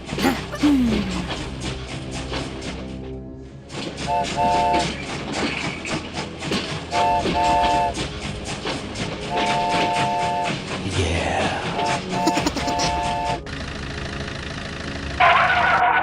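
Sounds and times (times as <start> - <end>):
train wheels clickety-clack: 1.4 - 13.4
train whistle: 4.0 - 5.1, 6.9 - 8.0, 9.2 - 10.8, 12.8 - 13.4, 15.2 - 16.0.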